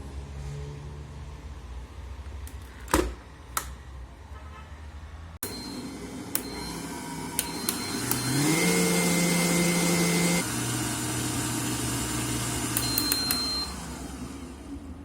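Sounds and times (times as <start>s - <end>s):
stand mixer motor running: 5.4s - 15.0s
mixer switch clicks: 6.3s - 6.6s, 12.7s - 13.5s.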